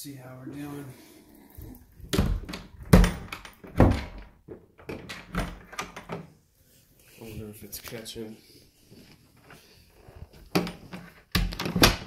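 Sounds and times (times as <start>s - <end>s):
wooden door latch thunking: 2.1s - 6.3s.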